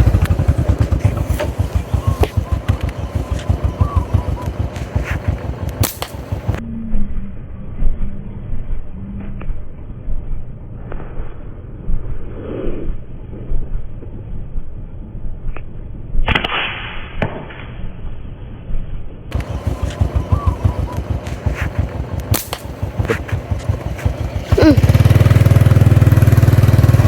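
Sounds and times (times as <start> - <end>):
small motorcycle engine running: 0.0 - 6.8, 19.3 - 27.0
thumps and handling noise: 21.2 - 24.2.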